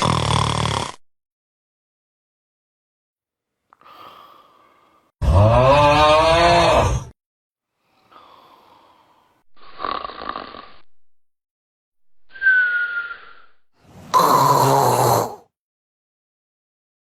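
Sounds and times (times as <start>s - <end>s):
person snoring: 0.0s - 1.0s, 3.8s - 7.2s, 8.0s - 11.0s, 12.4s - 15.5s.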